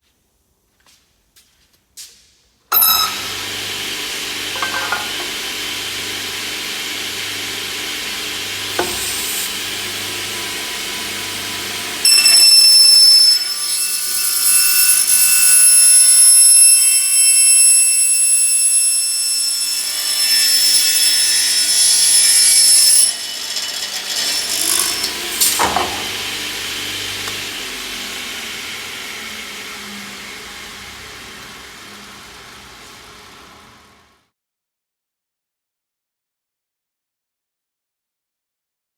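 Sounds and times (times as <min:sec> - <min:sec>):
circular saw cutting metal: 0:02.8 - 0:34.2
knocks: 0:25.4 - 0:26.2.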